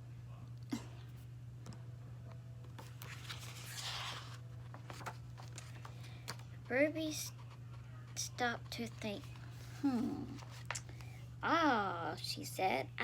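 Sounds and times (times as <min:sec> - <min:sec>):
steady low hum: 0:00.0 - 0:13.0
paper page rustling: 0:02.7 - 0:06.4, 0:09.2 - 0:11.0.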